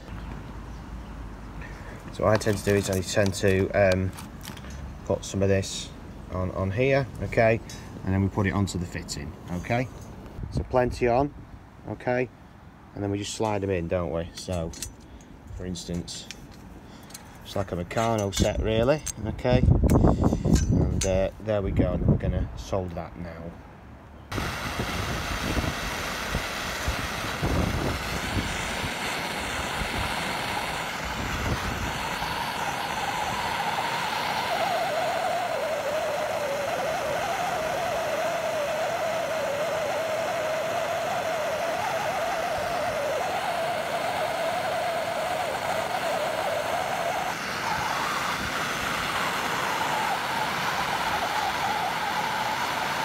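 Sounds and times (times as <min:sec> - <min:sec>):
blow lamp flame rushing: 0:24.3 - 0:53.0
wavering whine: 0:24.3 - 0:53.0.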